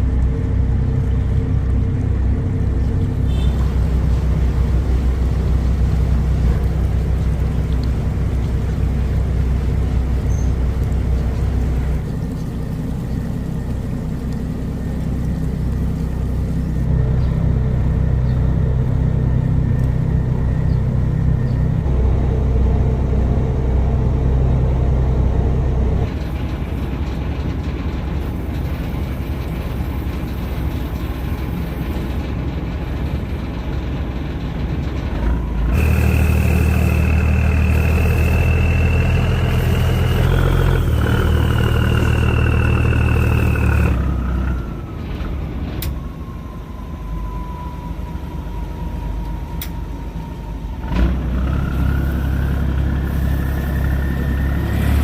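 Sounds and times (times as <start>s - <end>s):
boat engine throbbing: 0.0s - 55.0s
high whine: 35.3s - 44.8s.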